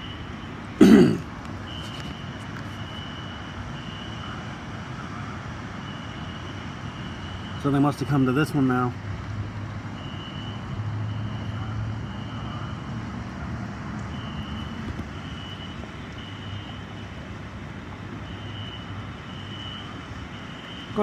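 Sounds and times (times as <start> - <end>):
fire alarm horn beeps: 0.0 - 0.6, 1.6 - 4.3, 5.8 - 8.2, 10.0 - 12.9, 14.1 - 17.2, 18.2 - 21.0.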